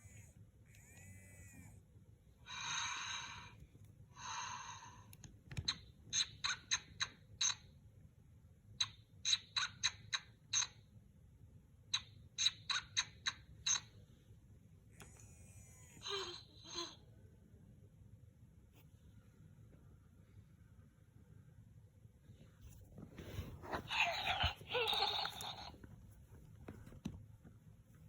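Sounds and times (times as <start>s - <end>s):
toy speaker snore sounds: 0.0s - 1.8s, 23.7s - 25.8s.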